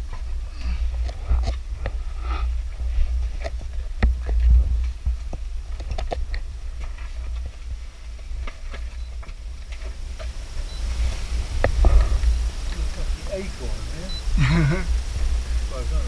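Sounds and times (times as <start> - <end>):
steady low rumble: 0.0 - 16.0
small clicks and knocks: 5.3 - 7.5.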